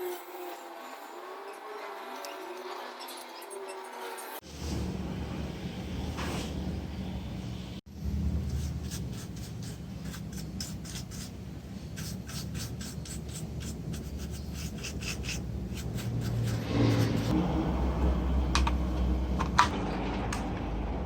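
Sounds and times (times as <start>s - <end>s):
steady low hum: 4.5s - 21.0s
scratchy rubbing strokes: 8.5s - 17.4s.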